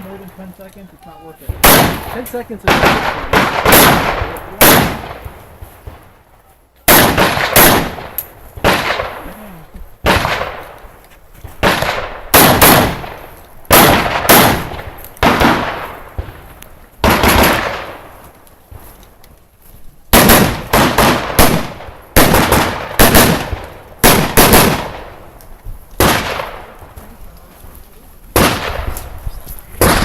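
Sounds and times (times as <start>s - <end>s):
echoing rifle shots: 1.6s - 6.2s, 6.9s - 9.2s, 10.0s - 10.8s, 11.5s - 18.2s, 20.1s - 25.4s, 26.0s - 26.9s, 28.3s - 29.1s, 29.8s - 30.0s.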